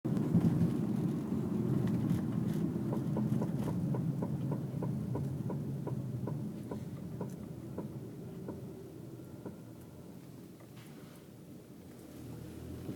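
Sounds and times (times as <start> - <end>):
car rolling and slowing: 0.1 - 12.9
rhythmic brake knocking: 1.8 - 8.7, 9.4 - 9.6.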